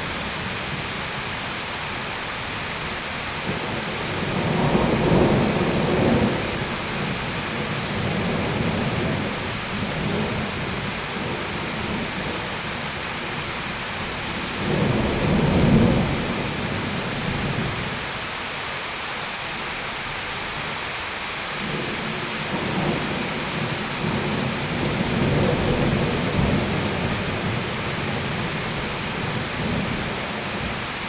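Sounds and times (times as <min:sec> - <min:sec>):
heavy rain: 0:00.0 - 0:31.0
rolling thunder: 0:03.4 - 0:12.5, 0:14.4 - 0:17.8, 0:21.6 - 0:30.8.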